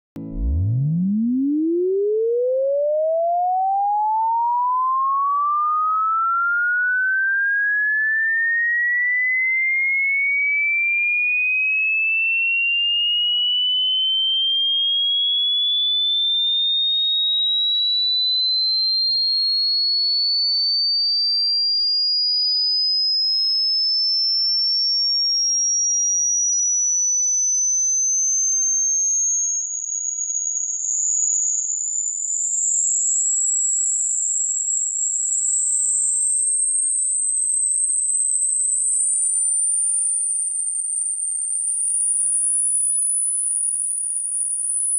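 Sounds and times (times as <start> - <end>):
rising sine tone: 0.2 - 8.7, 13.2 - 17.2, 32.9 - 44.9.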